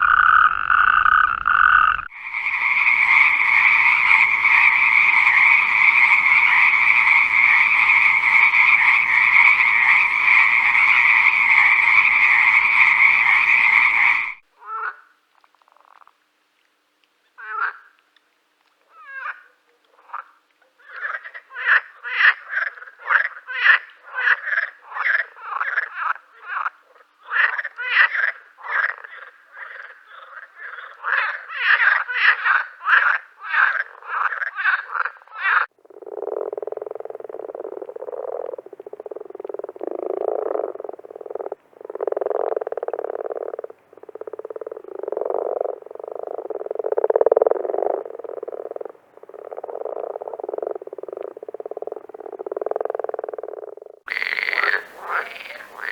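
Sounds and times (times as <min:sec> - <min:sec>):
frogs croaking: 0:00.0 - 0:14.4, 0:33.0 - 0:55.9.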